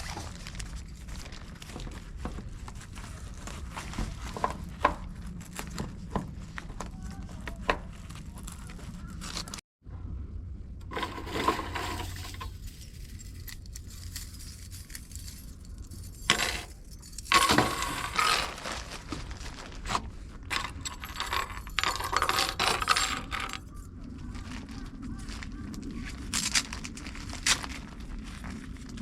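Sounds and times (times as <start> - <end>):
rustling: 0.0 - 9.6, 10.8 - 29.0
metallic clinks and scrapes: 10.9 - 18.9, 20.5 - 23.9.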